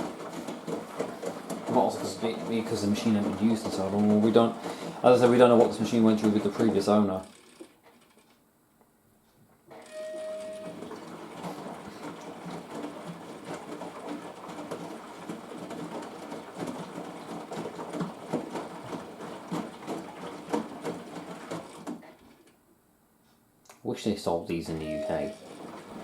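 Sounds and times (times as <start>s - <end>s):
washing machine drum turning: 0.0s - 7.2s, 9.7s - 22.1s, 24.7s - 26.0s
wet laundry sloshing and clunking: 0.0s - 7.2s, 10.6s - 22.4s, 25.4s - 26.0s
brief steady tone: 9.8s - 10.8s, 24.8s - 25.4s.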